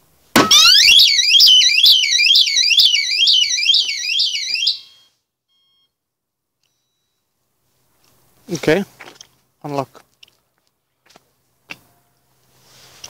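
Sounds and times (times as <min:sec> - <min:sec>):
vehicle alarm siren warbling: 0:00.4 - 0:05.2.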